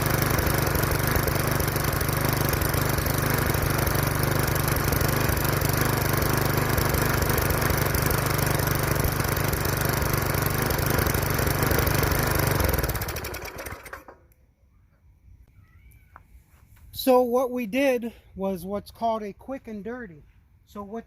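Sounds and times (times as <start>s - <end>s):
rototiller engine running: 0.0s - 14.2s.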